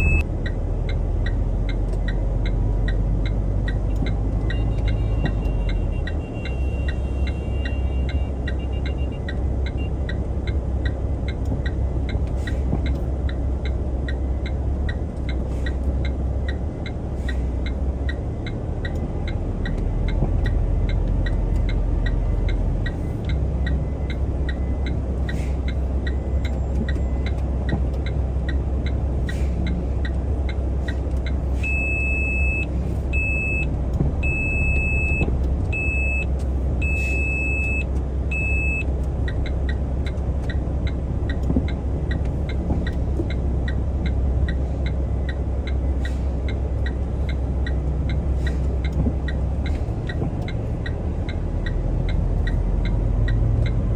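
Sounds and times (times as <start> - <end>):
truck engine running: 0.0 - 53.9
faint regular ticking: 38.8 - 53.8.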